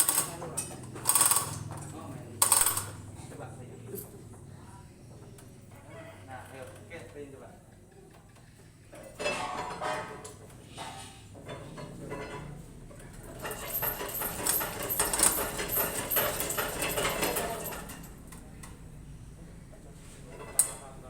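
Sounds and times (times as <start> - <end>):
metal tools clinking and rattling: 0.0 - 3.1, 9.1 - 10.4, 11.5 - 18.2.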